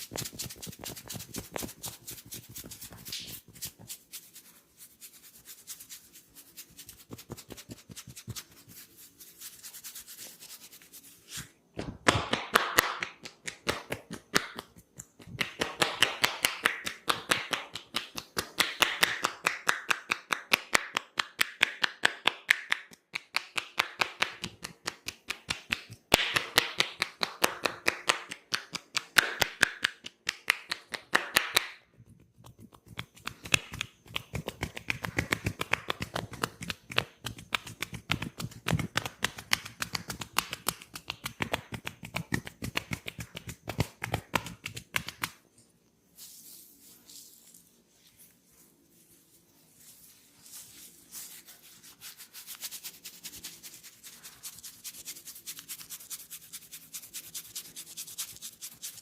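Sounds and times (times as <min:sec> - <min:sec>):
hands rubbing skin: 0:00.0 - 0:45.5, 0:46.1 - 0:59.0
hands tapping on a head: 0:11.8 - 0:45.4.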